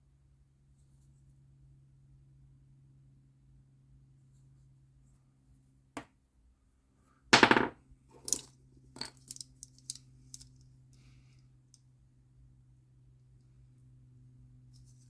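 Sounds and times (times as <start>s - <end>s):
shotgun shells and tools clicking: 8.2s - 11.1s.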